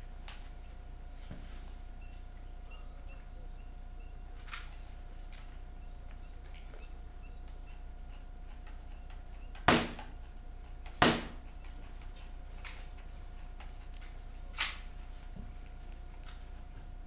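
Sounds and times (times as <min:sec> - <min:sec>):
airsoft gun shots: 0:09.7 - 0:10.0, 0:11.0 - 0:11.4.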